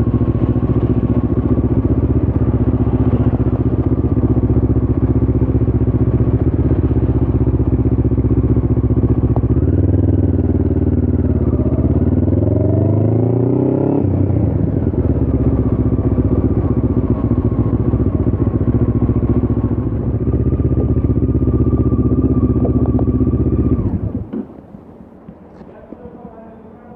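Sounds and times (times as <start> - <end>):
motorcycle engine running: 0.0 - 26.9.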